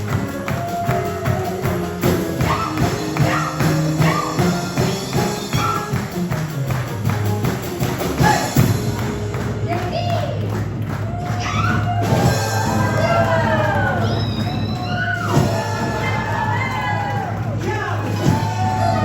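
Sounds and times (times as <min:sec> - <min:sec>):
music with a steady beat: 0:00.0 - 0:14.0.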